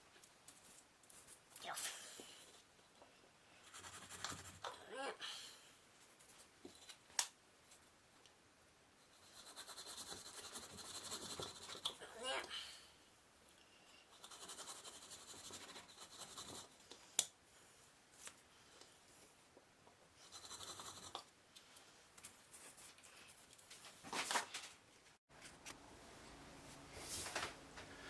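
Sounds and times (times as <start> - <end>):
scratching and rubbing at workbench: 14.2 - 16.8.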